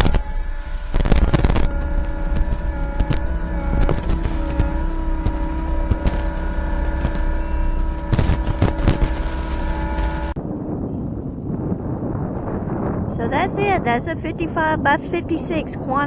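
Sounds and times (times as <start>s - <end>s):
skid steer engine whining: 0.0s - 10.4s.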